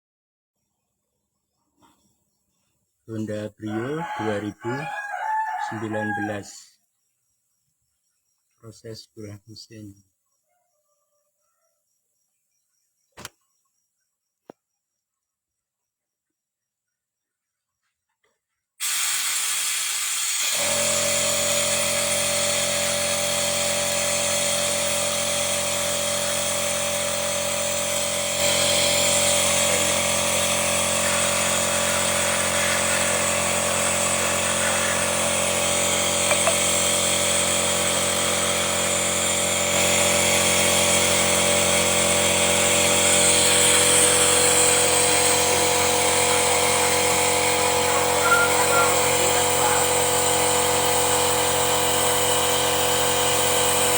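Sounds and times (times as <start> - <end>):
car engine running: 23.5 - 53.9.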